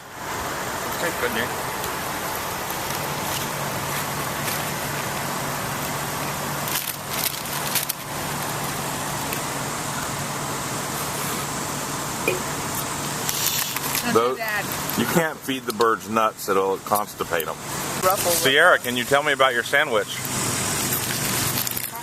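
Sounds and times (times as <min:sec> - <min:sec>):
low hum: 0:00.0 - 0:18.9
road traffic: 0:00.0 - 0:22.0
crackling clicks: 0:01.8 - 0:09.5.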